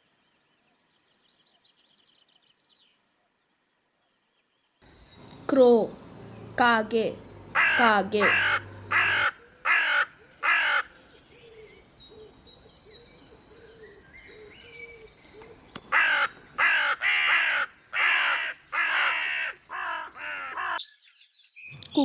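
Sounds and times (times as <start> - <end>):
faint bird chirping: 4.5 - 9.2
crow cawing: 7.3 - 10.9, 16.0 - 20.8.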